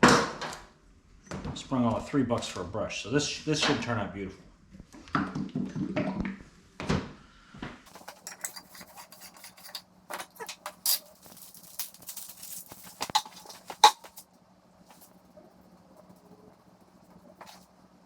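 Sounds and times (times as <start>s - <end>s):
faint steady hum: 6.2s - 18.0s
metal clinks and knocks: 7.9s - 14.2s.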